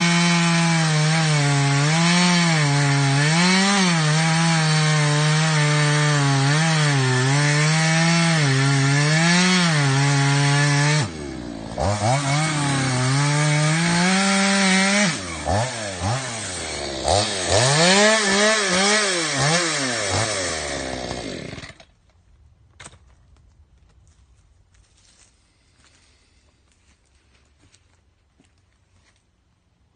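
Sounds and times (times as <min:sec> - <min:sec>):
chainsaw cutting wood: 0:00.0 - 0:22.0.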